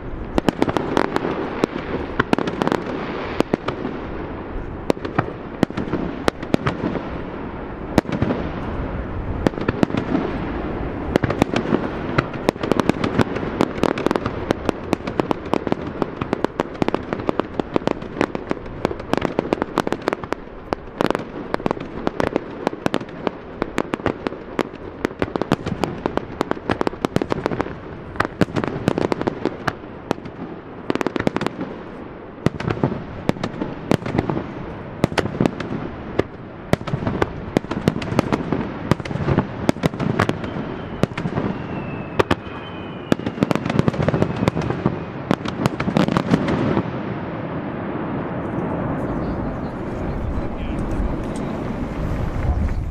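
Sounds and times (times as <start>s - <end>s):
fireworks bangs and crackles: 0.0s - 52.9s
rumble of booms: 48.6s - 52.9s.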